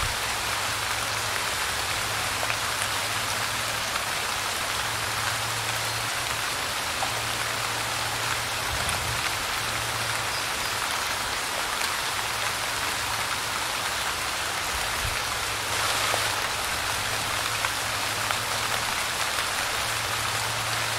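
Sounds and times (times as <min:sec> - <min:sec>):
light rain falling: 0:00.0 - 0:20.9.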